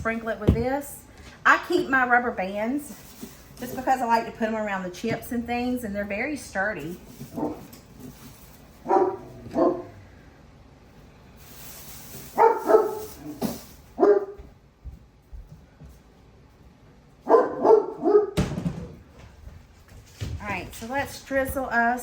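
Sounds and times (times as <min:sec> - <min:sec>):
dog barking: 0:07.3 - 0:07.7, 0:08.8 - 0:10.0, 0:12.4 - 0:13.1, 0:14.0 - 0:14.5, 0:17.2 - 0:18.4
hiss: 0:11.4 - 0:12.4.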